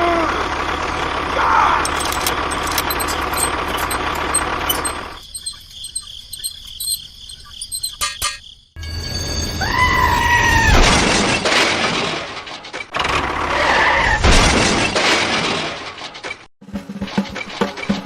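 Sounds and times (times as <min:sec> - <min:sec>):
scattered clicks and ticks: 0:01.8 - 0:08.4.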